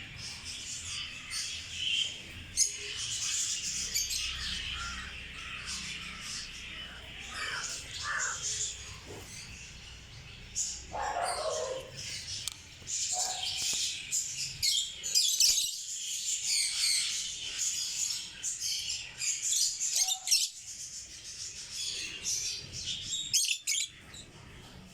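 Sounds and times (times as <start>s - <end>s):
lovebirds chattering: 0.0s - 24.9s.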